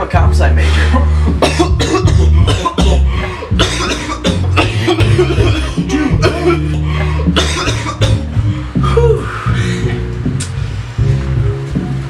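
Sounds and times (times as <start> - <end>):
background music with bass line: 0.0 - 12.0
person coughing harshly: 1.4 - 8.3.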